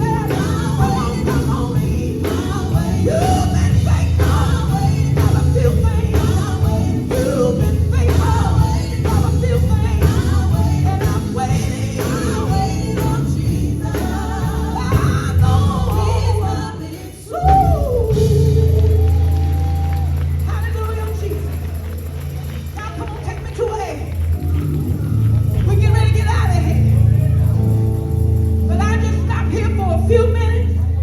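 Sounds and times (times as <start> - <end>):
steady drum beat: 0.0 - 16.7
gospel singing over a band: 0.0 - 24.0.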